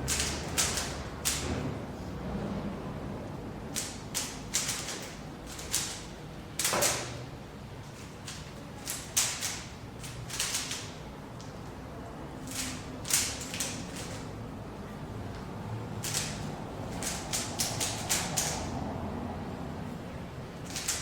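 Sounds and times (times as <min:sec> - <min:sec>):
puzzle cube clicking and scraping: 0:08.2 - 0:10.9, 0:16.0 - 0:18.7.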